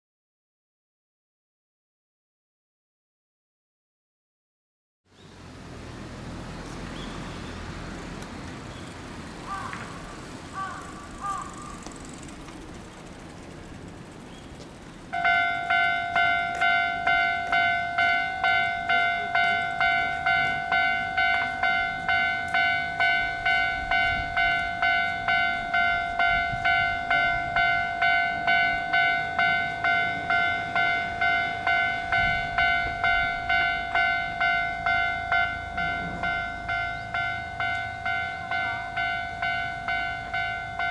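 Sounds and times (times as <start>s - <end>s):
level crossing alarm bell: 15.1s - 40.9s.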